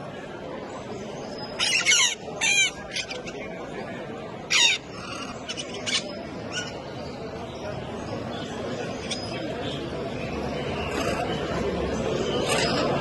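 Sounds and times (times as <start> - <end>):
steady background noise: 0.0 - 13.0
bird squawking harshly: 1.6 - 3.4, 4.5 - 6.8.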